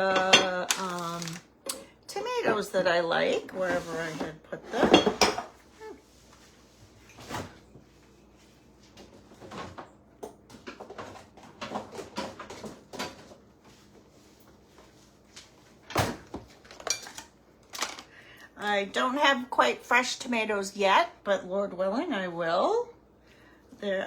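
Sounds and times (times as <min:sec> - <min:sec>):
knocks and clatters of objects: 0:09.0 - 0:13.4, 0:15.9 - 0:18.1.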